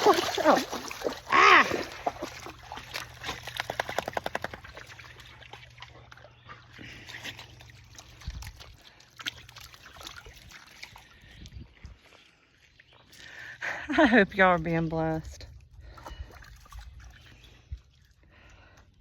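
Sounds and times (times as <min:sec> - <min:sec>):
dog splashing in water: 0:00.0 - 0:11.2
trickling water: 0:00.0 - 0:19.0.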